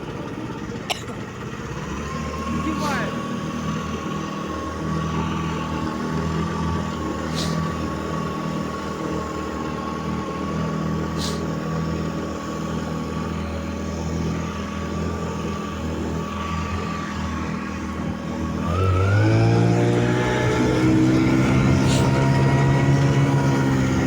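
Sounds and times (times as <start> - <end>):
outboard motor running: 0.0 - 24.0
short high hisses: 7.3 - 7.7, 11.2 - 11.5.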